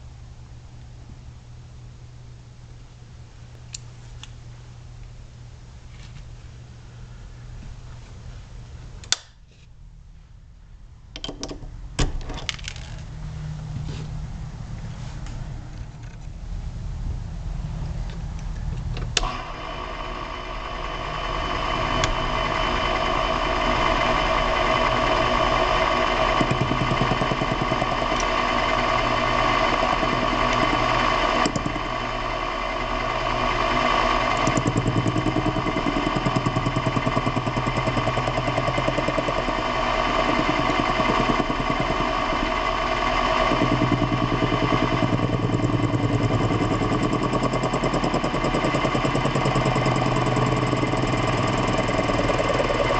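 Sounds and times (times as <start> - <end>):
low hum: 11.8 - 52.9
machine tool motor whine: 19.0 - 52.9.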